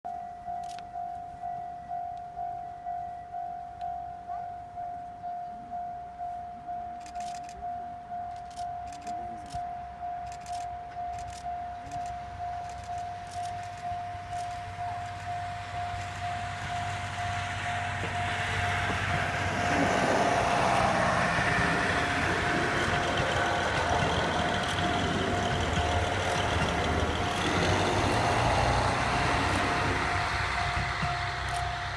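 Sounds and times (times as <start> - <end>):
diesel train engines: 0.1 - 31.9
train wheels on rails: 7.0 - 31.9
level-crossing bell clanging: 7.6 - 31.9.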